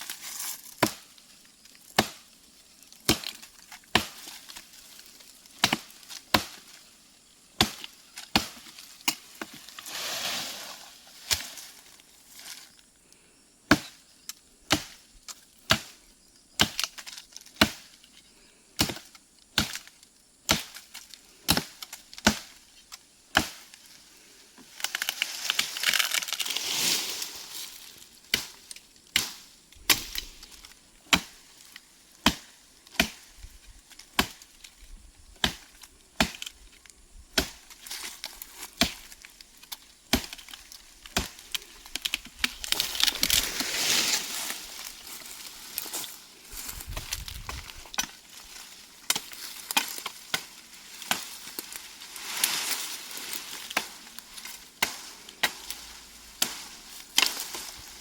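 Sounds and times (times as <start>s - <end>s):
blade chopping tree wood: 0.8s - 1.1s, 1.9s - 2.2s, 3.0s - 4.7s, 5.5s - 6.8s, 7.6s - 9.6s, 13.7s - 14.0s, 14.7s - 15.0s, 16.6s - 17.9s, 18.8s - 19.9s, 20.5s - 20.9s, 21.5s - 22.6s, 23.3s - 23.7s, 31.1s - 31.4s, 32.2s - 33.3s, 34.1s - 34.5s, 35.4s - 36.5s, 37.3s - 44.8s, 46.9s - 48.2s, 49.0s - 51.4s, 54.6s - 55.8s
rustling noise: 9.5s - 12.7s, 25.0s - 28.0s, 41.0s - 48.8s.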